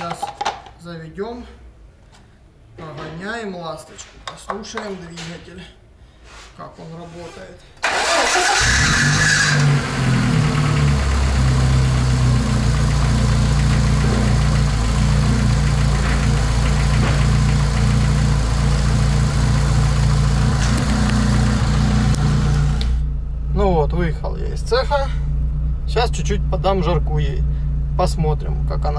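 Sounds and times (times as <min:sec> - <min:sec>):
car engine idling: 0:07.8 - 0:28.9.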